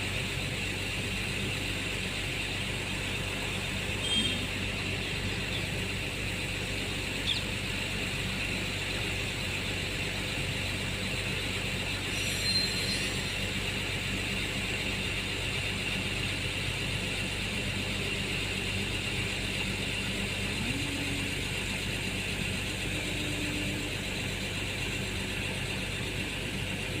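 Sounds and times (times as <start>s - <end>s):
freight train rumbling: 0.0s - 27.0s
high squeaks: 12.1s - 13.4s.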